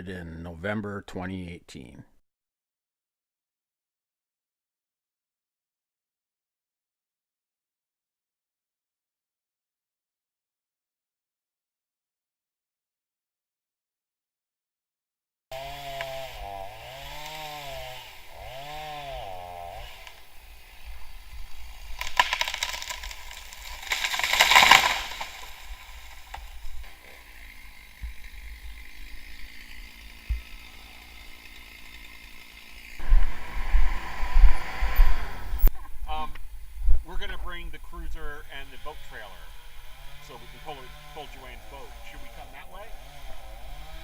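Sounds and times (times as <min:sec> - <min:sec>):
chainsaw revving: 0:15.5 - 0:35.6, 0:38.0 - 0:44.0.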